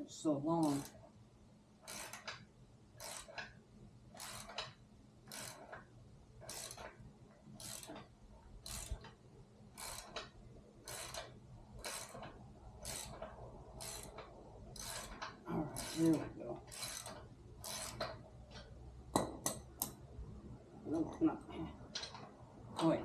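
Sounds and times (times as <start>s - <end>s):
ratchet wrench clicking: 0.6s - 1.0s, 1.8s - 9.2s, 9.8s - 18.7s.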